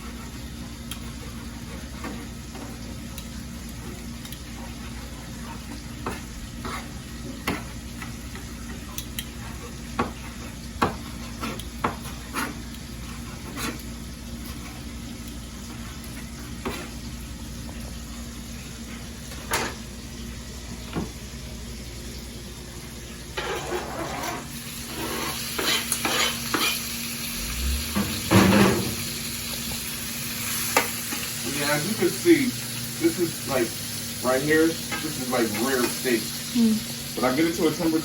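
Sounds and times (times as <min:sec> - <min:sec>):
shrimp sizzling in pan: 0:23.0 - 0:38.0.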